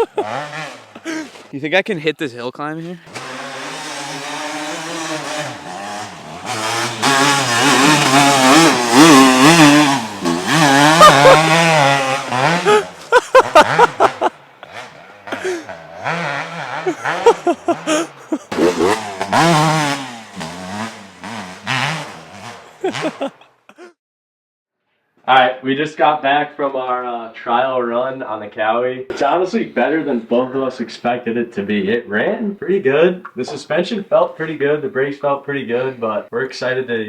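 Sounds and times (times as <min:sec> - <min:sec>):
dirt bike engine revving: 0:00.0 - 0:01.6, 0:03.0 - 0:23.4.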